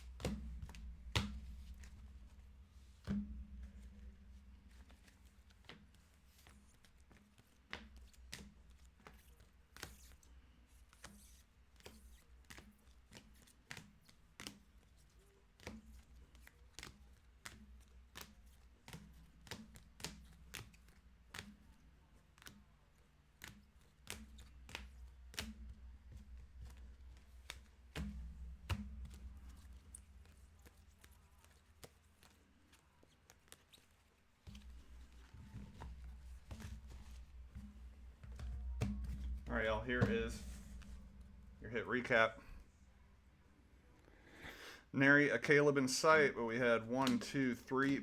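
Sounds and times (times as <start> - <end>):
cards clicking and tapping: 0.2 - 42.6, 47.0 - 48.0
low steady hum: 34.7 - 44.3.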